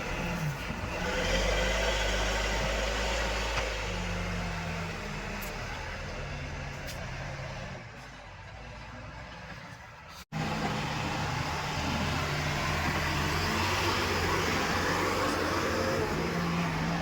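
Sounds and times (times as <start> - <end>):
diesel engine running: 10.3 - 17.0.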